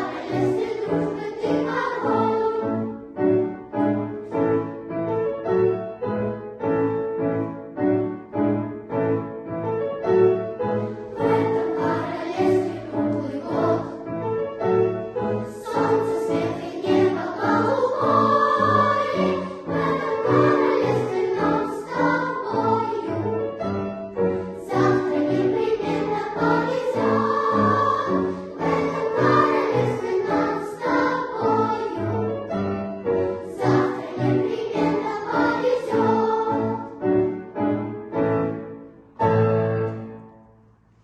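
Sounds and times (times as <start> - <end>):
children's choir singing: 0.0 - 4.7, 10.6 - 37.8.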